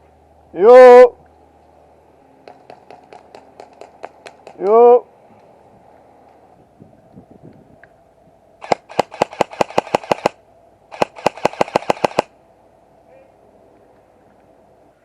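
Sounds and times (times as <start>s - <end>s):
airsoft gun rapid shots: 2.5s - 4.7s, 8.6s - 12.3s.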